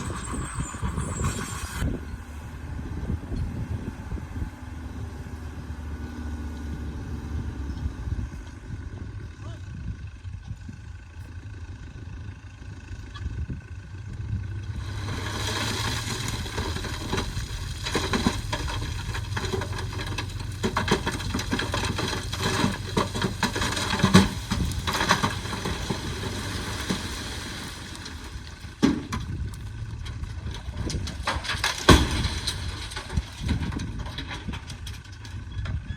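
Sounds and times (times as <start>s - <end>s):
rock scraping and clattering: 0.0s - 2.2s, 14.7s - 35.9s
heavy machinery engine running: 0.0s - 35.9s.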